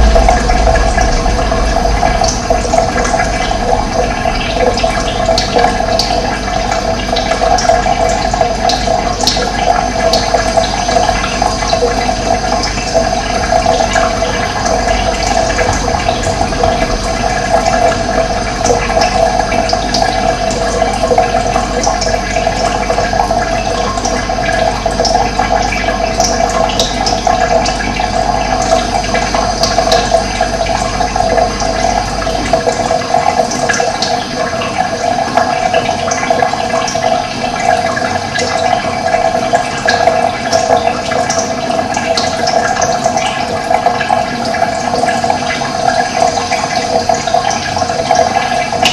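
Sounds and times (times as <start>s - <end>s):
running water rushing: 0.0s - 48.9s.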